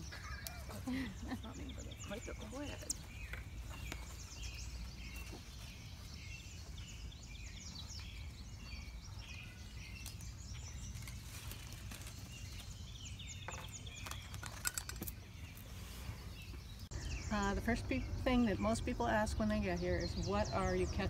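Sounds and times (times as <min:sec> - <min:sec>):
birds chirping and singing: 0:00.0 - 0:21.0
low outdoor rumble: 0:15.3 - 0:21.0.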